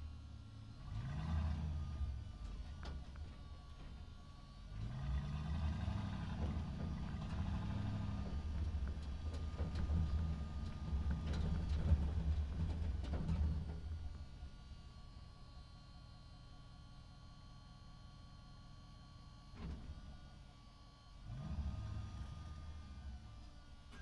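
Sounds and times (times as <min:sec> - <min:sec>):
truck engine revving and rumbling: 0:00.0 - 0:16.2, 0:21.0 - 0:24.0
faint knocks and rattles: 0:06.2 - 0:14.6.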